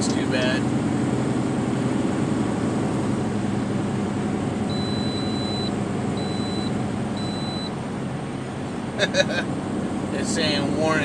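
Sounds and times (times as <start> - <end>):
truck engine and road drone: 0.0 - 11.0
dashboard warning chime beeping: 4.7 - 7.8.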